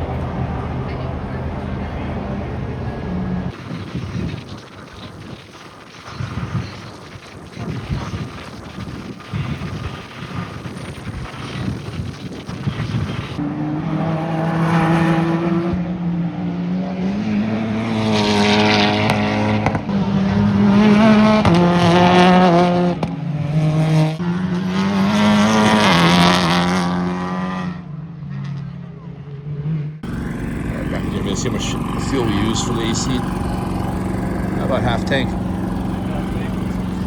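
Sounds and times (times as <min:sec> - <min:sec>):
race car engines passing: 0:00.0 - 0:04.5, 0:12.7 - 0:37.0.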